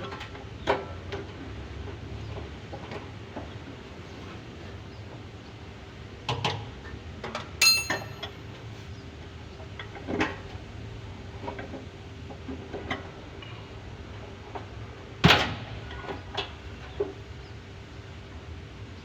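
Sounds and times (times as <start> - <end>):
metal parts knocking: 7.6 - 8.3
ringing metallic clink: 7.6 - 8.4.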